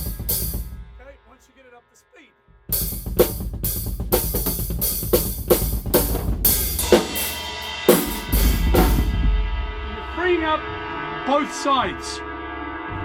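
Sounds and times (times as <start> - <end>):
drum kit groove: 0.0 - 1.2, 2.7 - 10.7.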